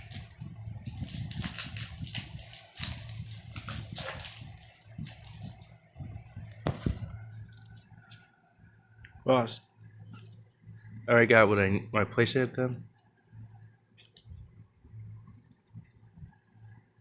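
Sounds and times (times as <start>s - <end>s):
foil pack crinkling: 0.0s - 5.7s
steady low hum: 0.0s - 17.0s
cards being handled: 6.6s - 8.3s.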